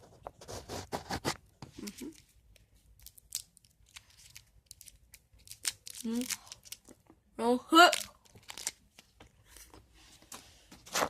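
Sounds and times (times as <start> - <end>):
wrappers tearing and crinkling: 3.0 - 6.9, 7.9 - 8.9.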